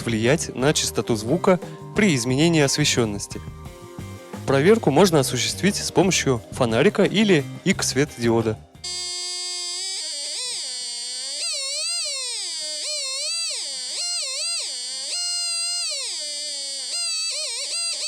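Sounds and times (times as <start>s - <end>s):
buzzy electronic tone: 8.8s - 18.0s.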